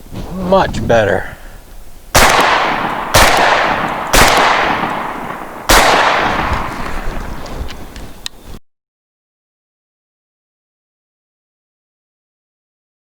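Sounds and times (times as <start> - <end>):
shotgun blasts with echo: 2.1 - 7.5.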